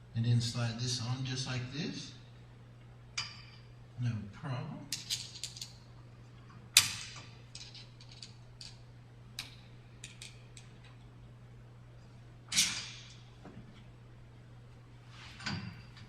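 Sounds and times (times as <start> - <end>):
steady low hum: 0.0 - 16.0
metal chain clicks and clanks: 4.9 - 5.8, 6.8 - 8.8.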